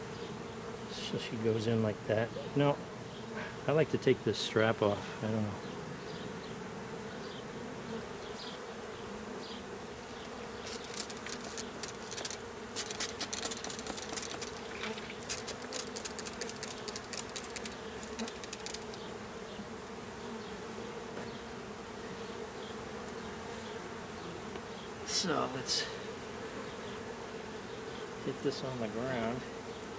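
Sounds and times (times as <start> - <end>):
bees buzzing: 0.0 - 29.9
clicks and rattles of handling: 10.6 - 19.1.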